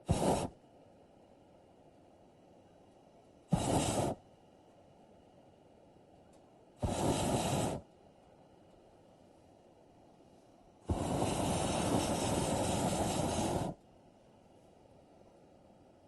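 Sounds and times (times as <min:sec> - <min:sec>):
air hissing out of balloon: 0:00.0 - 0:00.6, 0:03.5 - 0:04.2, 0:06.8 - 0:07.9, 0:10.8 - 0:13.8.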